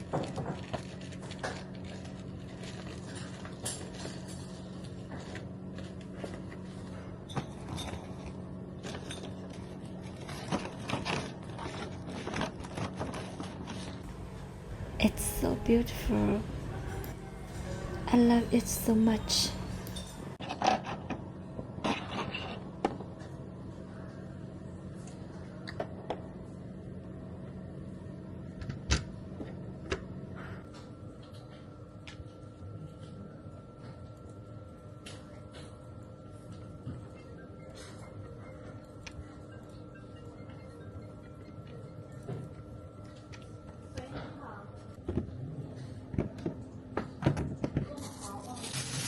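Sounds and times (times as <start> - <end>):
steady low hum: 13.9 - 20.4.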